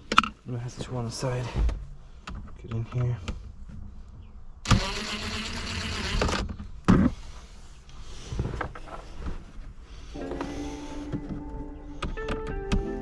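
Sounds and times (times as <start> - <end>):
cordless screwdriver whirring: 4.7 - 6.5.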